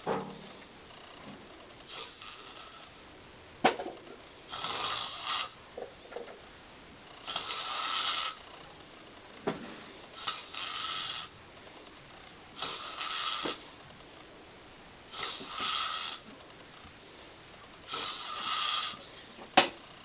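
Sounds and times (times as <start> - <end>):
person snoring: 1.8 - 3.0, 4.4 - 5.6, 7.2 - 8.4, 9.7 - 11.4, 12.6 - 13.8, 15.1 - 16.4, 17.2 - 19.4.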